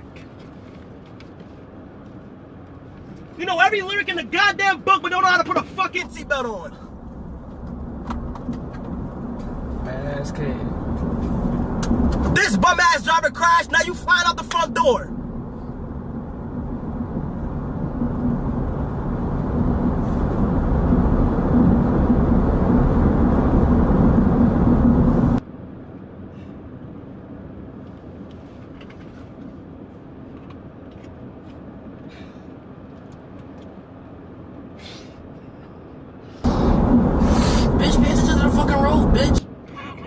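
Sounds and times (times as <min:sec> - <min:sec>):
car road and engine rumble: 0:00.0 - 0:40.0
steady hum: 0:03.4 - 0:27.6, 0:34.7 - 0:39.4.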